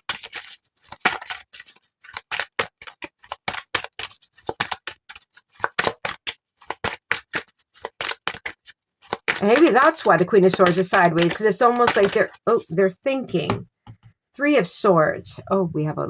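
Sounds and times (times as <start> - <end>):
cards being shuffled: 0.0 - 12.4.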